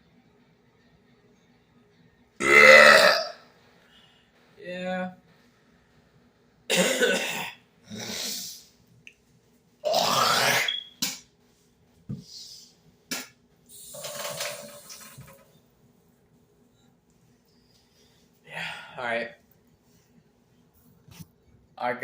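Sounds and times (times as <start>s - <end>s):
man burping: 2.4s - 3.4s, 6.7s - 8.2s, 9.9s - 10.8s
breaths: 3.5s - 4.6s, 17.5s - 19.0s.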